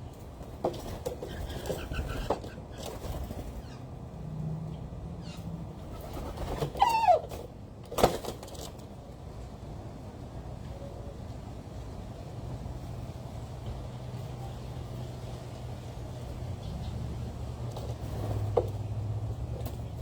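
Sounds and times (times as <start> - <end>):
birds calling: 1.2 - 7.4.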